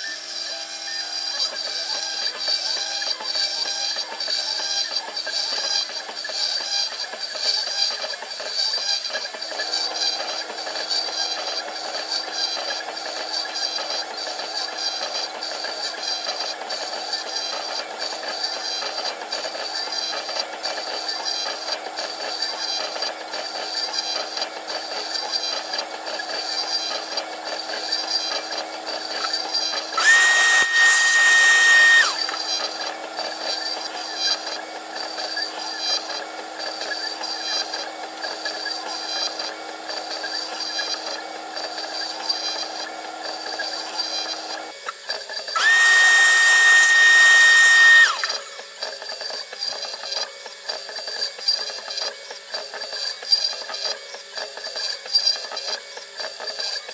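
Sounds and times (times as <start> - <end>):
stepper motor high whine: 29.2 - 32.8, 45.6 - 48.6
milling machine noise: 29.7 - 32.6, 45.6 - 48.6.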